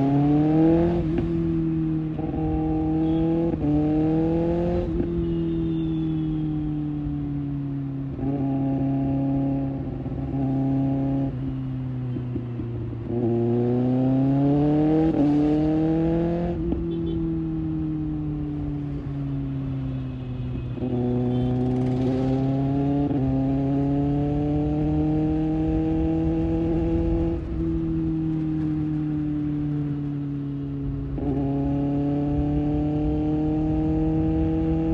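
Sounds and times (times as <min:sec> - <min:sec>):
motorcycle engine revving: 0:00.0 - 0:05.3, 0:12.1 - 0:18.4, 0:20.8 - 0:34.9.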